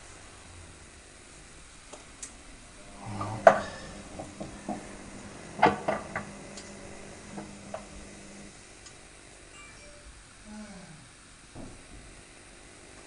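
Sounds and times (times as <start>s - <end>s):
washing machine drum turning: 2.7s - 8.5s
metallic knocks and clanks: 3.2s - 4.8s.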